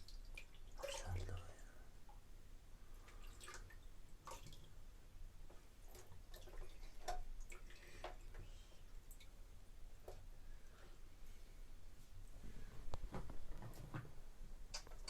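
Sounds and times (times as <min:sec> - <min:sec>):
water dripping and splashing: 0:00.0 - 0:02.2, 0:03.0 - 0:04.8, 0:05.8 - 0:08.3.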